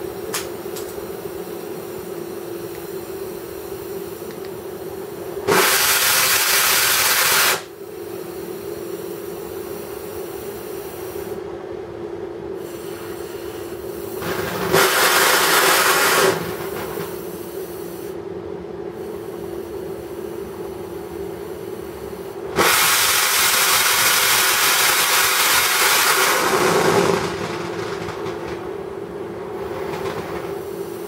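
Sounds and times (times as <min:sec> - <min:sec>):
welding station humming and hissing: 0:00.0 - 0:31.0
loud gas hiss: 0:02.6 - 0:11.4, 0:12.6 - 0:18.2, 0:18.9 - 0:27.6.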